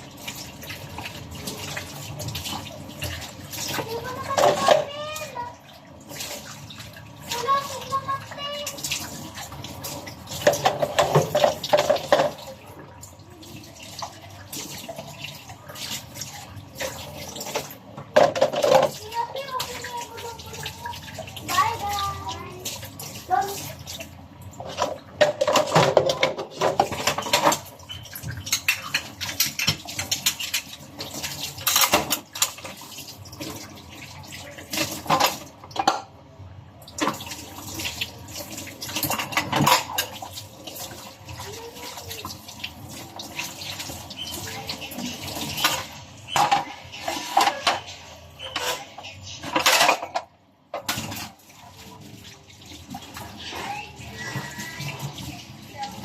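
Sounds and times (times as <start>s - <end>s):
water running: 0.0s - 56.0s
dishes and cutlery clattering: 1.1s - 4.9s, 9.8s - 12.7s, 16.8s - 19.9s, 24.6s - 32.8s, 34.6s - 36.2s, 38.7s - 40.4s, 43.4s - 51.4s.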